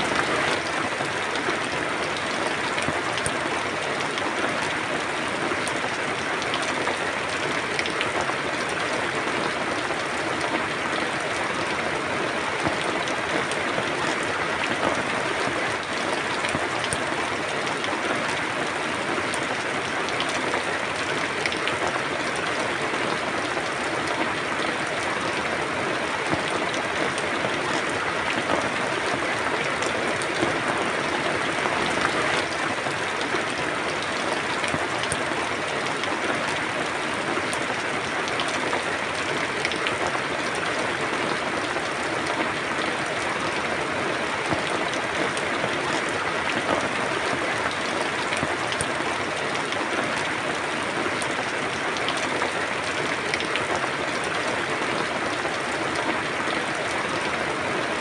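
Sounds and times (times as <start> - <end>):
raindrops pattering on a surface: 0.0 - 58.0
steady rain falling: 0.0 - 58.0.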